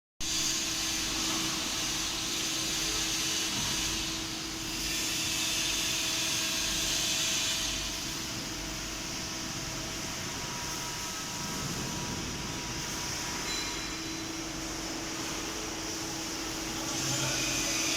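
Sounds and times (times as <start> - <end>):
hydraulic press hiss: 0.3 - 8.6.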